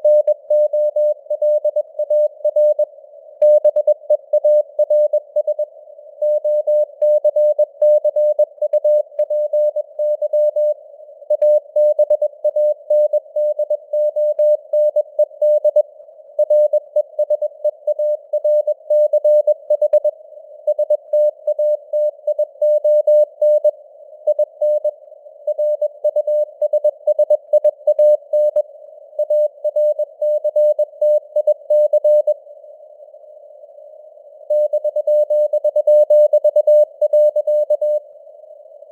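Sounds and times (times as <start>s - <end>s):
morse code beeps: 3.4s - 5.6s, 29.2s - 32.4s, 34.5s - 38.0s.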